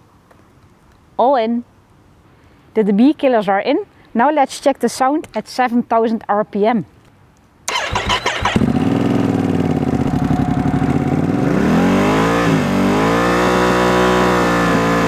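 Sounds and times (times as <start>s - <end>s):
motorcycle engine revving: 7.7s - 15.0s.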